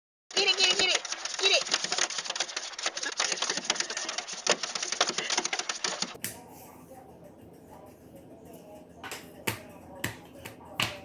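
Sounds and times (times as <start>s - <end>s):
rapid clicking and tapping: 0.3s - 6.2s.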